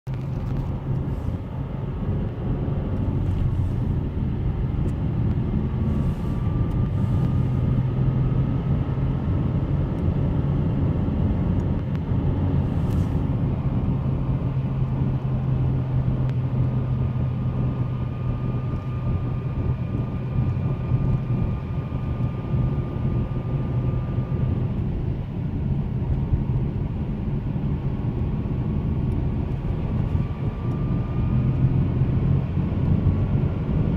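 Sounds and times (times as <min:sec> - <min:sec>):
car engine and road rumble: 0:00.0 - 0:33.9.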